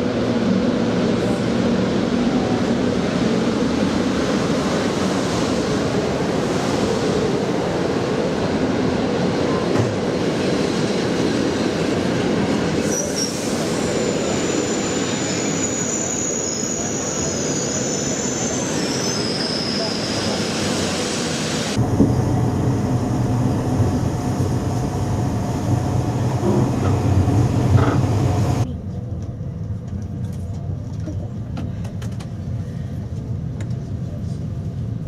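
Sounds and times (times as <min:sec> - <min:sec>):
train rumbling on rails: 0:00.0 - 0:35.0
train wheel squeal: 0:12.6 - 0:21.7.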